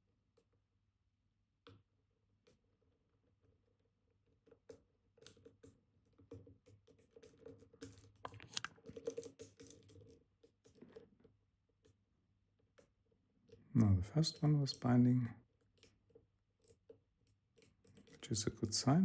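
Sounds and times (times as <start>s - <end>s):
lock pick clicking and scratching: 6.9s - 11.0s.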